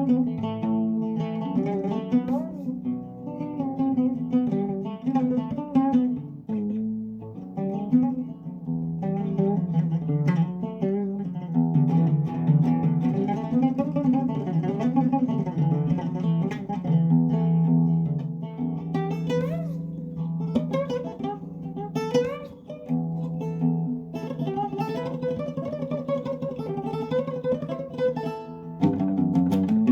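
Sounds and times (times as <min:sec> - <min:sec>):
plucked string instrument melody: 0:00.0 - 0:29.9.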